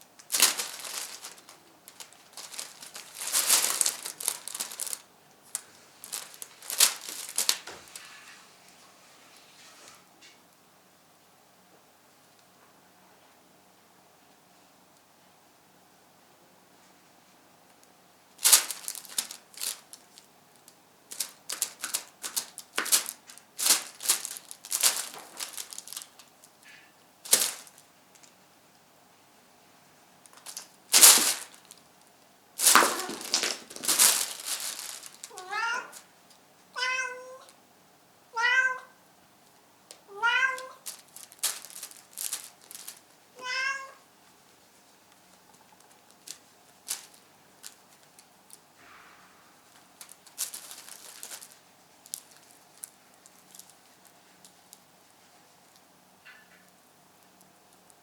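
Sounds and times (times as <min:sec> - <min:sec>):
plastic sheet crinkling: 0:00.2 - 0:08.4, 0:18.4 - 0:28.4, 0:30.3 - 0:32.0, 0:32.6 - 0:36.1, 0:40.1 - 0:43.9, 0:45.2 - 0:55.8
kitten meowing: 0:35.3 - 0:36.0, 0:36.8 - 0:37.5, 0:38.4 - 0:39.0, 0:40.1 - 0:40.8, 0:43.4 - 0:44.0.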